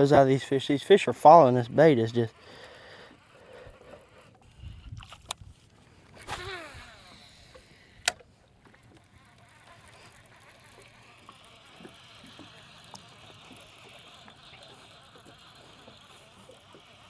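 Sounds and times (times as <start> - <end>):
fishing reel spool whirring: 0.0 - 17.0
fishing reel clicks: 6.1 - 17.0.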